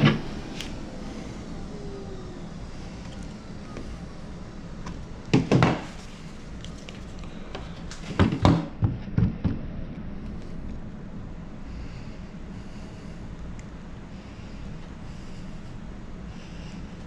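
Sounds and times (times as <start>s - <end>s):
steady low hum: 0.0s - 17.0s
sharp knocks and thumps: 5.3s - 6.0s, 8.1s - 9.7s.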